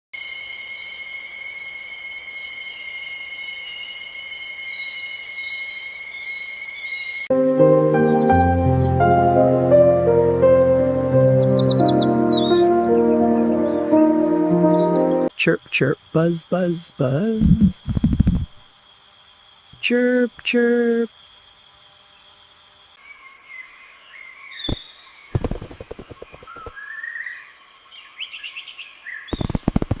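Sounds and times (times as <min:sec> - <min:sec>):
shrill insect chorus: 0:00.2 - 0:07.3, 0:15.3 - 0:30.0
hummingbirds chirping: 0:10.9 - 0:18.6, 0:19.7 - 0:21.4, 0:23.1 - 0:30.0
fast clicks: 0:17.4 - 0:18.6, 0:25.4 - 0:26.8, 0:29.4 - 0:30.0.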